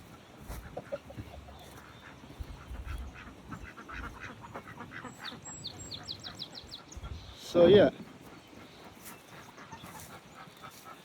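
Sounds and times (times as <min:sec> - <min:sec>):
waterfowl calling: 0:00.5 - 0:06.9.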